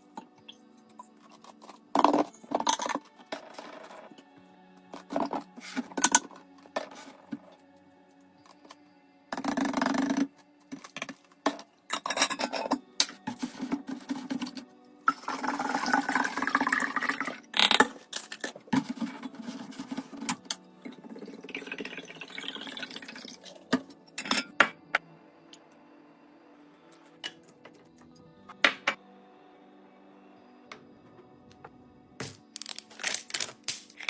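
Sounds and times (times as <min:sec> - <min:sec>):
liquid pouring into container: 0:15.1 - 0:17.4, 0:20.9 - 0:23.7.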